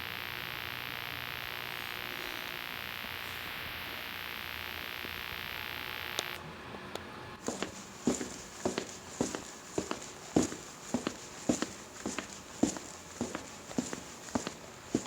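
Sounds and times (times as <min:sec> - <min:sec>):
steady static hiss: 0:00.0 - 0:06.5, 0:07.3 - 0:15.0
click: 0:06.1 - 0:07.0.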